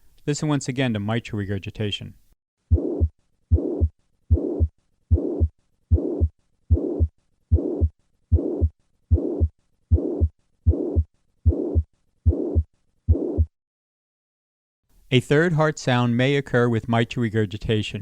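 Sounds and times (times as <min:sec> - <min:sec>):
heartbeat with whooshing murmur: 0:02.7 - 0:13.5.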